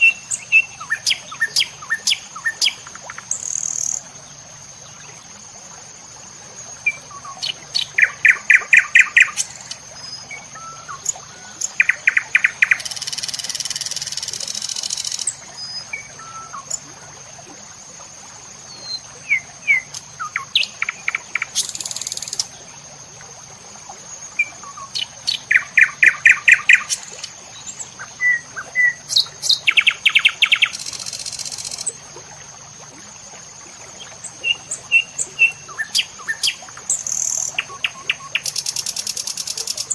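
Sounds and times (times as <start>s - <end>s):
small birds trilling and chirping: 6.8s - 16.9s, 24.2s - 32.0s, 34.0s - 39.9s.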